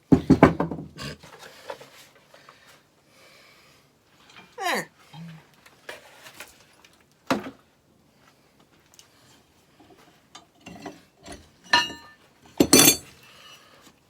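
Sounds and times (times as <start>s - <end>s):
metal clanks and knocks: 10.6s - 13.1s
ringing metal clang: 11.7s - 13.1s.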